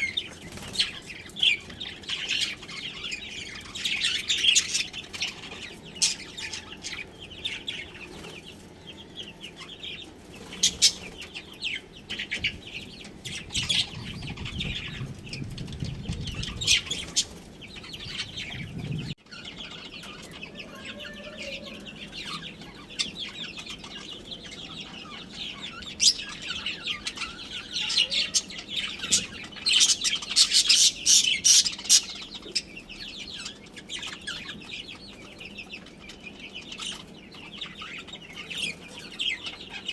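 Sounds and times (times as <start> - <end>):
budgerigars chirping and chattering: 0.0 - 39.9.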